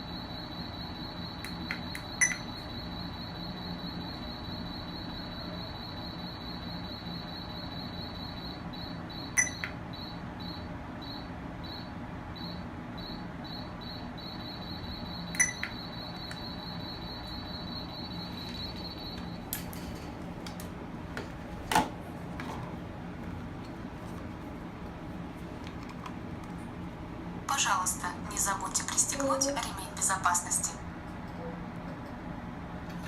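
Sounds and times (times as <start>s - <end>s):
pulsing high-pitched electronic whine: 0.0s - 19.4s.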